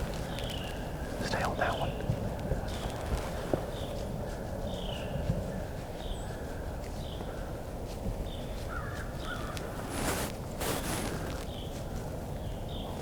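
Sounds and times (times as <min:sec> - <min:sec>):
birds chirping: 0:00.0 - 0:07.6.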